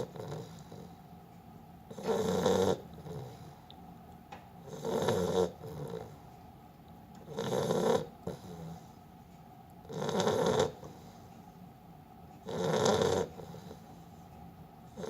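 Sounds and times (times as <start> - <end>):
dog snoring: 0.0 - 1.0, 1.9 - 3.6, 4.6 - 6.2, 7.2 - 9.0, 9.8 - 11.2, 12.4 - 13.9.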